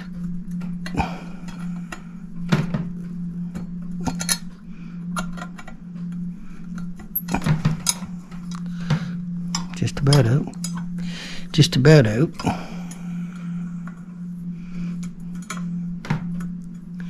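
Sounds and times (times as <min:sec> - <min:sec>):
steady low hum: 0:00.0 - 0:17.0
metal clock parts clinking: 0:04.1 - 0:04.4.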